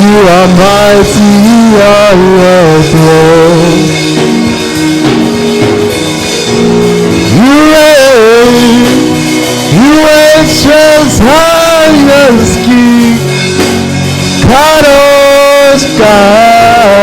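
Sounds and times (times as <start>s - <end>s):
solo voice singing: 0.0s - 4.0s, 7.3s - 13.3s, 14.4s - 17.0s
sustained instrumental chords: 0.0s - 17.0s.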